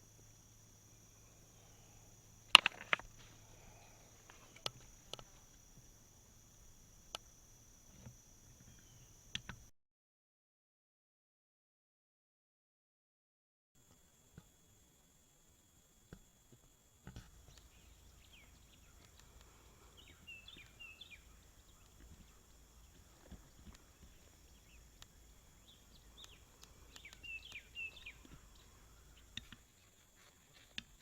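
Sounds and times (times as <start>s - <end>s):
faint bird chirping: 0.0s - 9.7s, 15.4s - 31.0s
faint clicks: 18.6s - 29.6s.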